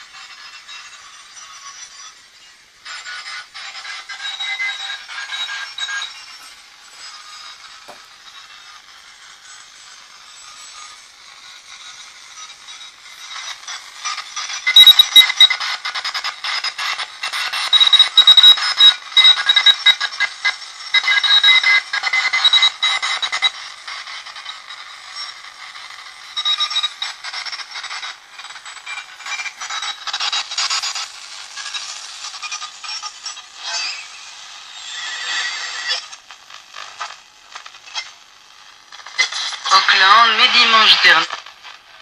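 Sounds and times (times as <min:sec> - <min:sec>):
radio static crackling: 0:11.6 - 0:18.6, 0:28.7 - 0:42.0
high steady whistle: 0:14.7 - 0:15.5.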